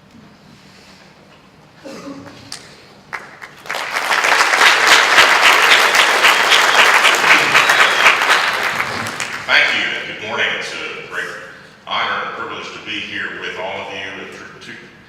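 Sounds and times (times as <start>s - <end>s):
audience applauding: 2.3s - 10.0s.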